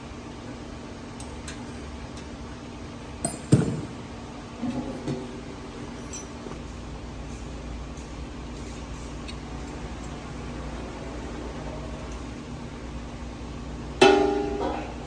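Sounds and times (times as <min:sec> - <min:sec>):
loud metallic clink with ring: 0:03.2 - 0:03.9
tools knocking: 0:03.2 - 0:04.0.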